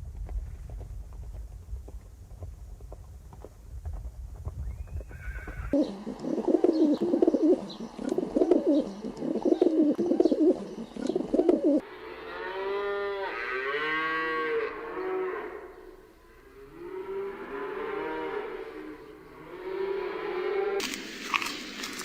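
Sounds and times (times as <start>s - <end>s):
dove cooing: 5.7s - 11.8s
cow mooing: 11.8s - 20.8s.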